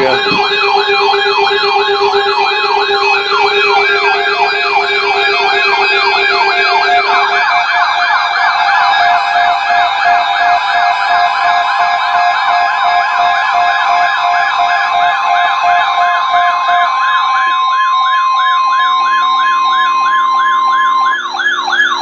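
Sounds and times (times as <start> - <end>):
electronic yelping siren: 0.0 - 22.0.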